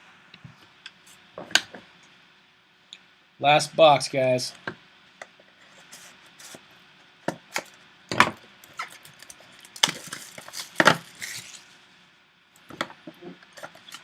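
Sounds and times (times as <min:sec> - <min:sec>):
wrapper rustling: 0:08.8 - 0:11.8.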